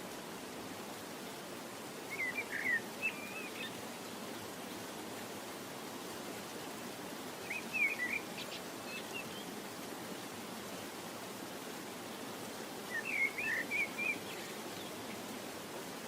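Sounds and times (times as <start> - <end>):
steady background hiss: 0.0 - 16.0
bird chirping: 7.5 - 9.5, 12.9 - 15.0.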